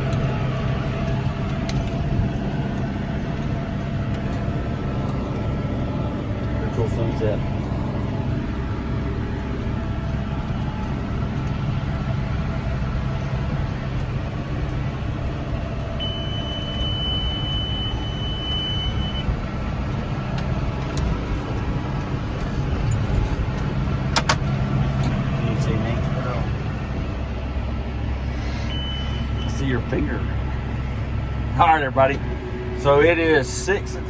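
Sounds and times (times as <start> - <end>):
tractor engine running: 0.0 - 34.0
high electronic beep: 16.0 - 19.2, 28.4 - 29.7.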